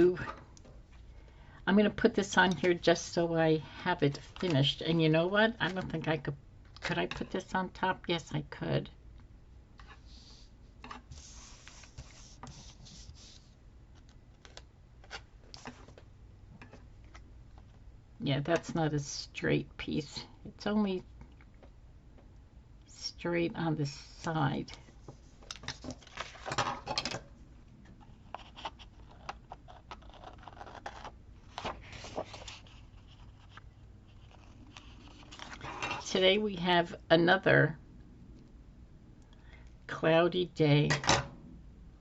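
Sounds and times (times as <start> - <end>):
paper rustling: 25.1 - 26.6, 28.4 - 35.9.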